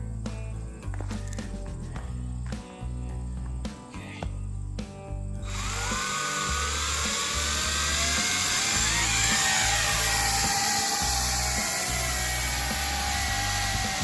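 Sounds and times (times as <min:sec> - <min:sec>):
toy drone motors whining: 0:05.4 - 0:14.0.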